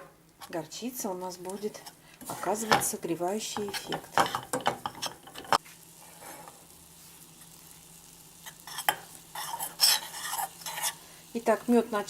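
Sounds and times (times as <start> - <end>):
spoon scraping a saucepan: 3.6 - 5.6, 8.5 - 11.0.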